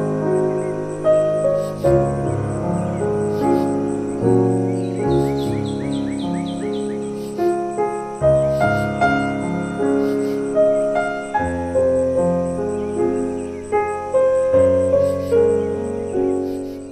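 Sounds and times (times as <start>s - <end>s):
soft piano melody: 0.0s - 16.9s
sustained low bass notes: 1.9s - 7.0s.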